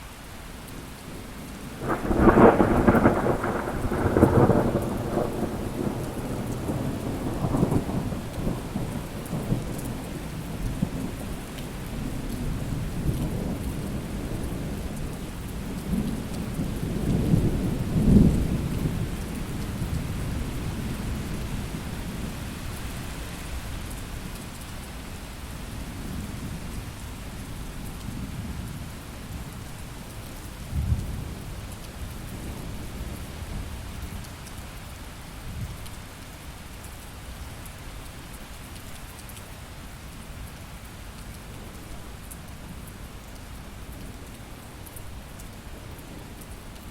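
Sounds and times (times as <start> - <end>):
rain falling steadily: 0.0 - 46.9
thunder clap: 1.8 - 7.6
rolling thunder: 1.8 - 9.7.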